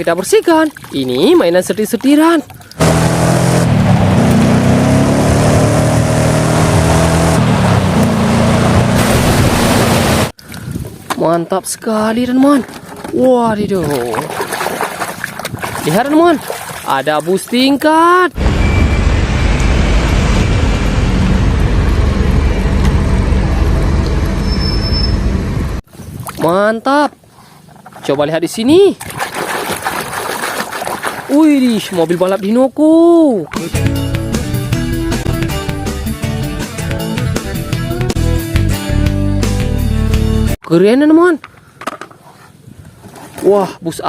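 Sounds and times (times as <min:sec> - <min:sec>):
water spraying: 0:08.0 - 0:10.4.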